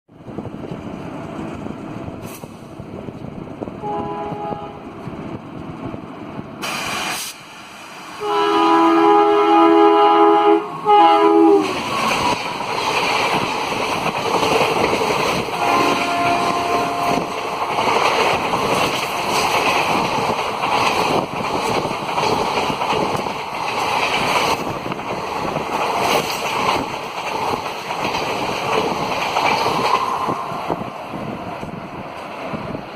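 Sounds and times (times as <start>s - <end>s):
train coaches running past: 0.1s - 32.9s
train horn: 3.8s - 4.9s, 8.2s - 11.8s, 15.6s - 17.4s.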